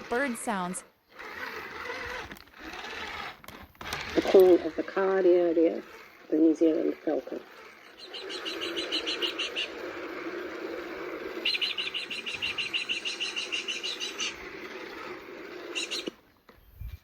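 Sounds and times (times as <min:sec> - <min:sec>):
falcon chattering call: 0:07.5 - 0:10.2, 0:11.3 - 0:14.5, 0:15.6 - 0:16.2.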